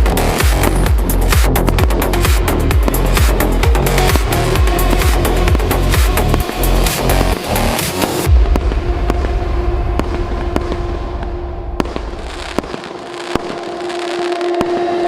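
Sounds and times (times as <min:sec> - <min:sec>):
low rumble: 0:00.0 - 0:15.0
firework bangs: 0:04.0 - 0:15.0.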